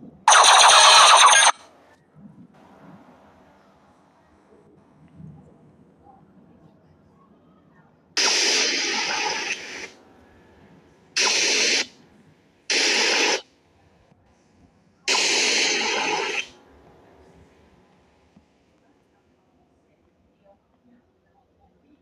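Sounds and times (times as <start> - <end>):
loud hissing bursts: 8.2 - 9.9, 11.2 - 11.9, 12.7 - 13.4, 15.1 - 16.5.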